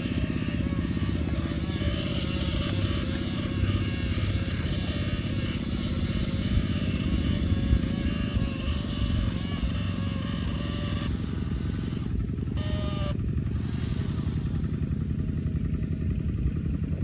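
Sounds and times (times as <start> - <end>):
rc truck engine throb: 0.0 - 17.0.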